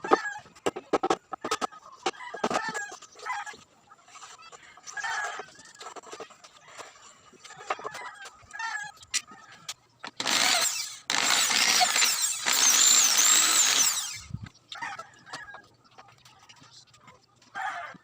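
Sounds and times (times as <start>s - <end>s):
electric power tool whining: 10.2s - 14.3s.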